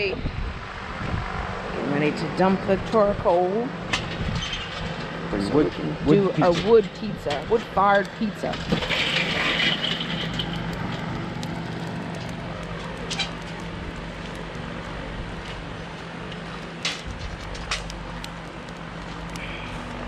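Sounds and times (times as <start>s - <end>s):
low hum: 0.0s - 20.0s
charcoal clattering into grill: 6.4s - 14.3s, 16.2s - 18.4s.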